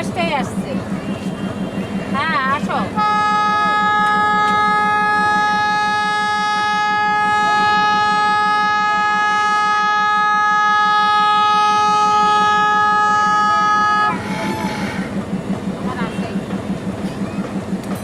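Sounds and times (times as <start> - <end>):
locomotive air horn blast: 2.9 - 15.2.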